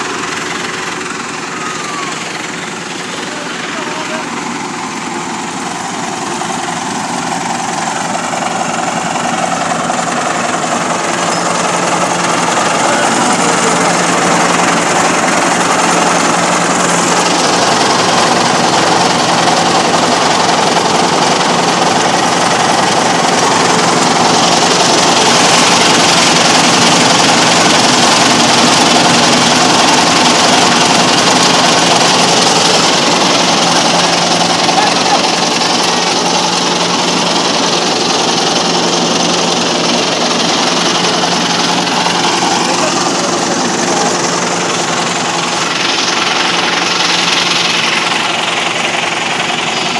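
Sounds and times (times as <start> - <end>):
engine running: 0.0 - 49.9
high-pitched noise: 10.9 - 17.5.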